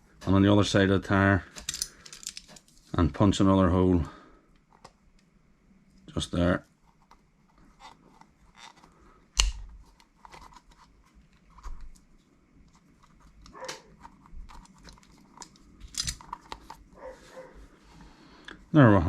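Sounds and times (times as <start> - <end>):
handling noises: 5.9 - 18.2.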